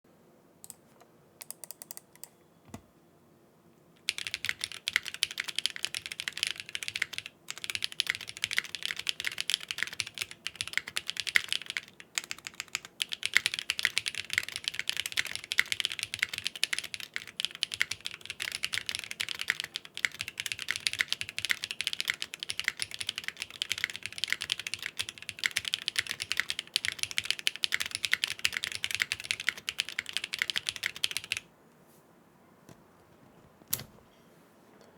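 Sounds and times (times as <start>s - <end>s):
typing on mechanical keyboard: 4.0s - 31.4s.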